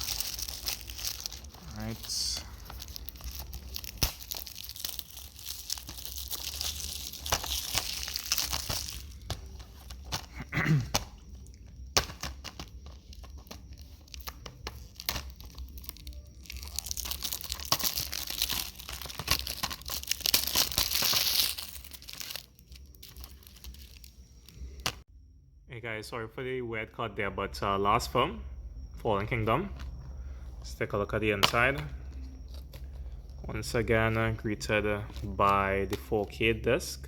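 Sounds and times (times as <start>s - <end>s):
plastic shrink wrap crinkling: 0.0s - 25.0s.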